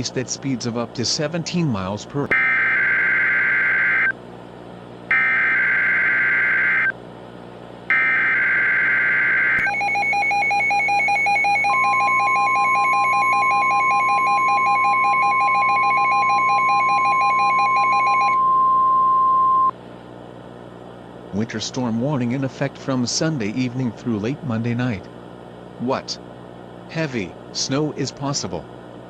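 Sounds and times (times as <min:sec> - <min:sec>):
fast pulsing alarm tone: 0:02.3 - 0:04.1, 0:05.1 - 0:06.9, 0:07.9 - 0:18.5
steady alarm tone: 0:02.3 - 0:04.2, 0:05.1 - 0:06.9, 0:07.9 - 0:19.7.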